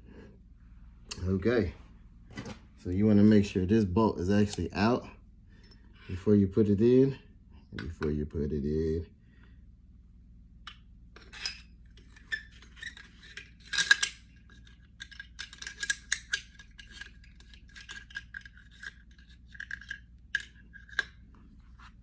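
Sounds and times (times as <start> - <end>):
small metal clicks and scrapes: 10.7 - 22.0.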